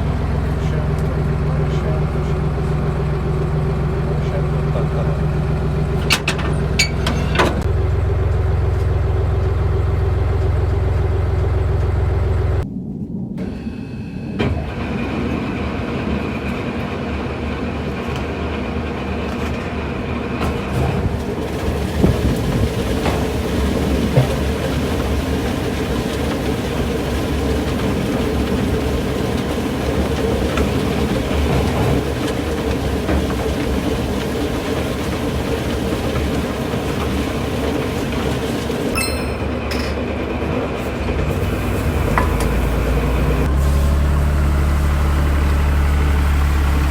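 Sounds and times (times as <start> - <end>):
machine rattling with whine: 14.5 - 43.6.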